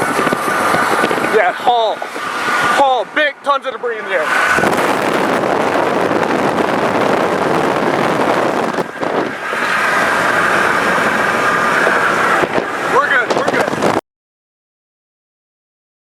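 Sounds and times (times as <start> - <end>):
wind and road noise in car: 0.0 - 14.0.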